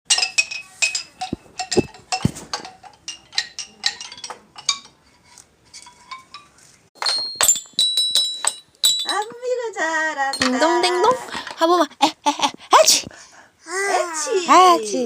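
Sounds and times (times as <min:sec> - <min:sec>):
light clinking on hard objects: 0:00.1 - 0:09.6, 0:10.3 - 0:11.6.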